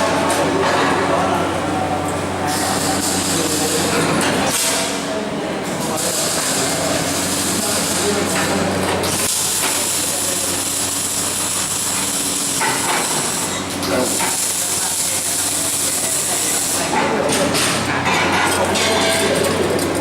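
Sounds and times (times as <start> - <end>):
arc welding hiss: 5.8 - 16.9.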